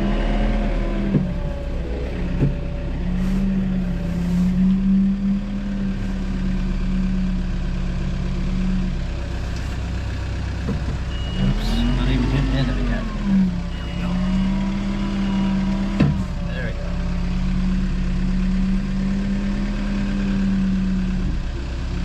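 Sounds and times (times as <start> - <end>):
vehicle engine running: 0.0 - 22.0.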